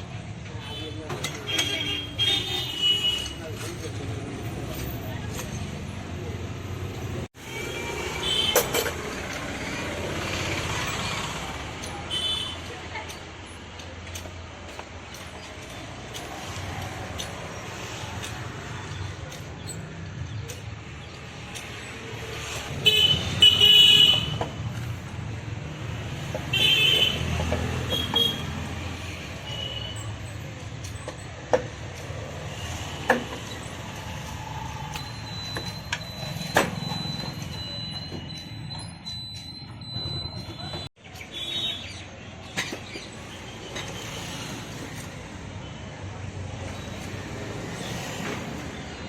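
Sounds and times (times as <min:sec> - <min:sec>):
road traffic: 0:00.0 - 0:49.0
vehicle horns honking: 0:00.6 - 0:03.4, 0:07.4 - 0:09.0, 0:12.1 - 0:12.7, 0:22.7 - 0:24.5, 0:26.4 - 0:28.6, 0:40.5 - 0:41.9.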